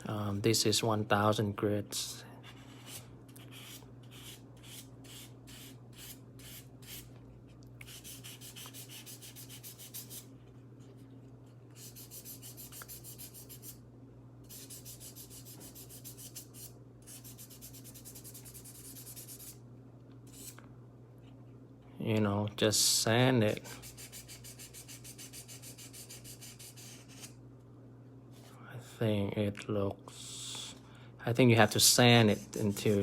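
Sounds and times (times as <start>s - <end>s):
sandpaper rubbing on metal: 7.9s - 10.2s, 14.5s - 19.6s.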